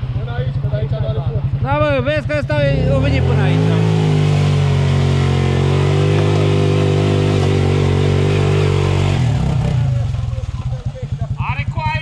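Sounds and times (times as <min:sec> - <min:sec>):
atv engine running: 0:00.0 - 0:12.0.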